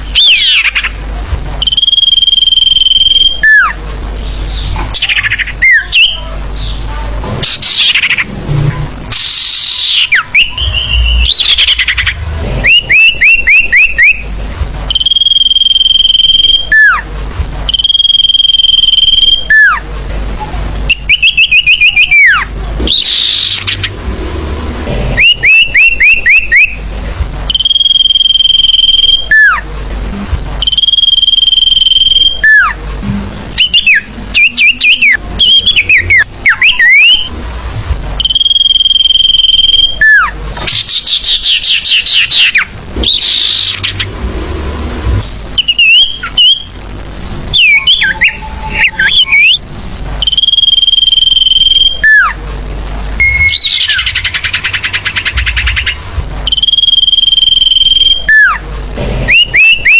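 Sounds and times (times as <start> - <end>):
bird chirping: 0.0 - 1.0, 1.6 - 6.8, 7.4 - 8.3, 9.1 - 17.0, 20.9 - 24.0, 25.2 - 26.9, 30.6 - 32.8, 33.6 - 37.3, 38.2 - 44.2, 45.2 - 46.7, 47.5 - 49.6
high bird whistle: 1.6 - 3.8, 9.1 - 14.3, 14.9 - 17.0, 17.7 - 19.8, 20.9 - 23.8, 25.2 - 26.8, 27.5 - 29.6, 30.6 - 32.8, 33.6 - 37.3, 38.2 - 44.0, 45.6 - 46.7, 47.5 - 49.6, 50.2 - 52.3, 53.2 - 58.6, 59.3 - 59.9.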